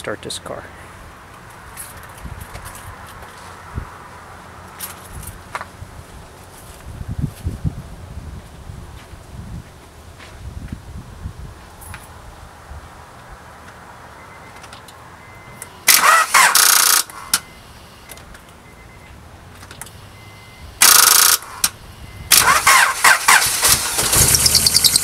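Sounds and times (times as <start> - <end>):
engine firing: 15.8 - 17.4, 20.8 - 25.0
car starter cranking: 15.9 - 17.2, 20.8 - 25.0.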